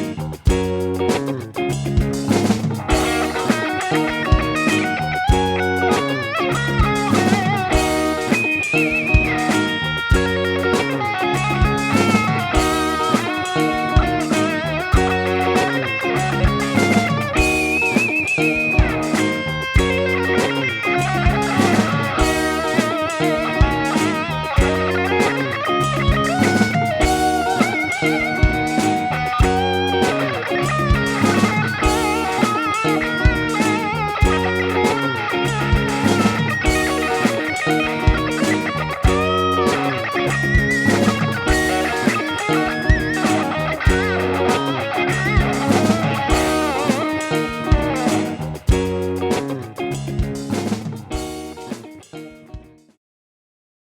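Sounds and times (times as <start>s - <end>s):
bass line: 0.0s - 51.8s
electronic drum beat: 0.0s - 52.0s
electric guitar lead: 0.0s - 52.8s
sharp drum hits: 26.0s - 51.8s.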